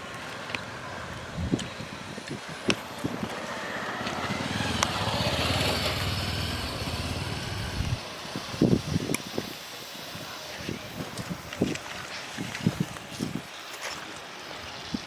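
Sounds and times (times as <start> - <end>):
small engine throbbing: 1.7 - 9.7.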